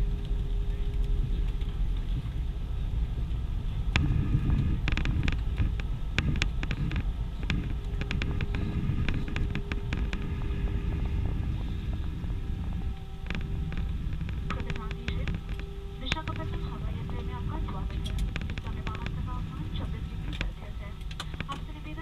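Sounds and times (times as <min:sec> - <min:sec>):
low cabin rumble: 0:00.0 - 0:22.0
sharp clicks and rattles: 0:03.2 - 0:22.0.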